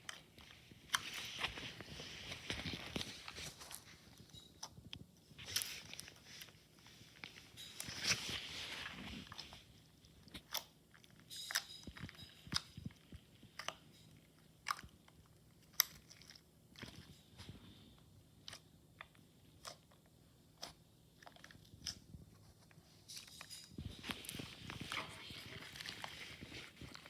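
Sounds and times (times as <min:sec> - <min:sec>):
slime clicking and crackling: 0:08.1 - 0:17.3.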